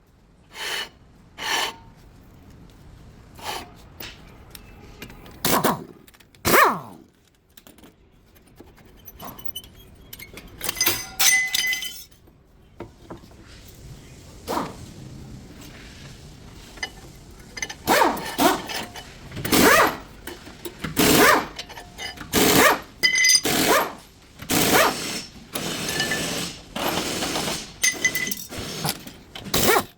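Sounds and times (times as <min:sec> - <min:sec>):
metal tools clanking: 0:07.2 - 0:12.3, 0:16.7 - 0:23.8, 0:27.8 - 0:29.8.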